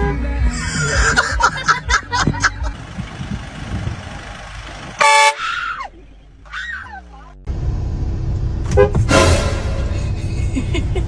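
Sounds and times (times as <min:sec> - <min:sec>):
vehicle horn blast: 0:05.0 - 0:05.5, 0:08.7 - 0:10.2.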